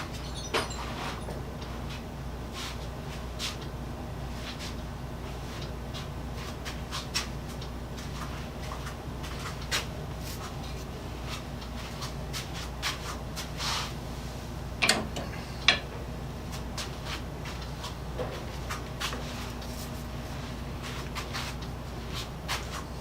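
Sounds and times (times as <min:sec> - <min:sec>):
steady low hum: 0:00.0 - 0:23.0
tools clicking on a workbench: 0:14.8 - 0:15.8.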